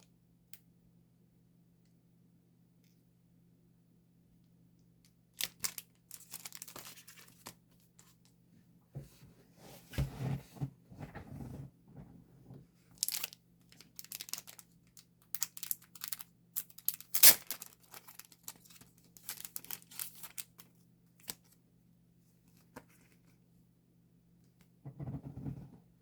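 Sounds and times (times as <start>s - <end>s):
plastic packaging crinkling: 5.4s - 7.5s, 13.0s - 14.7s, 15.4s - 20.6s.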